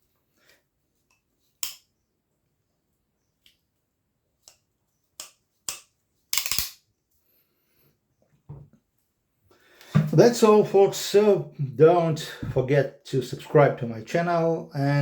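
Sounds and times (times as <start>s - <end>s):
folding knife ratchet clicking: 5.2s - 6.8s.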